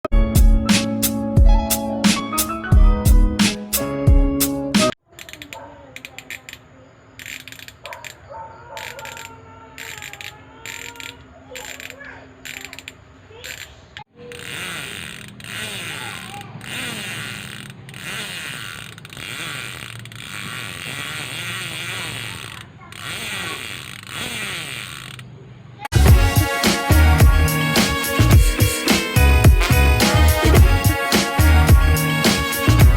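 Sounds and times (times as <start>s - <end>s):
bicycle hub ratchet clicking: 5.2s - 8.2s, 8.8s - 25.4s.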